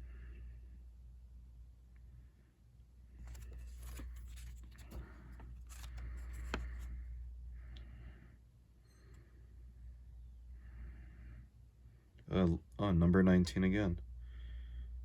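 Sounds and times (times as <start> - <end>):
paper banknotes rustling: 3.2 - 6.9
person breathing: 3.2 - 8.5, 10.5 - 12.2, 14.2 - 15.0.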